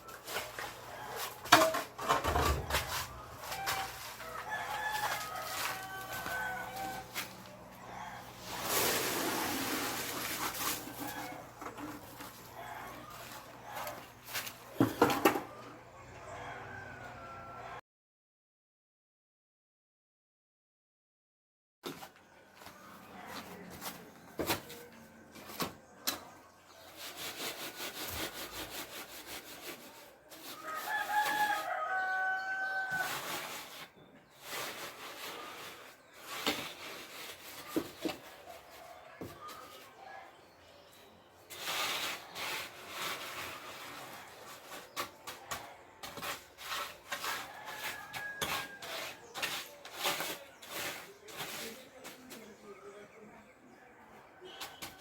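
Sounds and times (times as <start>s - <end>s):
scraping and knocking: 0.2s - 7.4s, 41.5s - 52.4s
rooster crowing: 2.4s - 9.4s, 12.5s - 13.9s, 15.6s - 17.8s, 30.6s - 33.3s, 47.3s - 49.0s.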